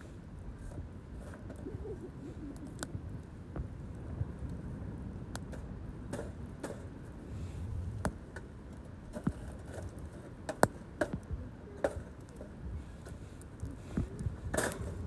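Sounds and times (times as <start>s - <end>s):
bonfire crackling: 0.3s - 15.0s
low rumble: 7.2s - 8.4s.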